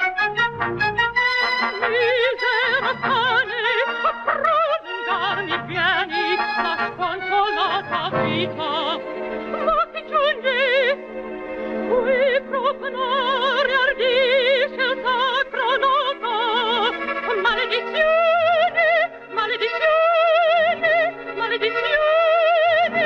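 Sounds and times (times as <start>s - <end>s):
instrumental accompaniment: 0.0s - 13.6s
operatic soprano singing: 0.0s - 23.0s.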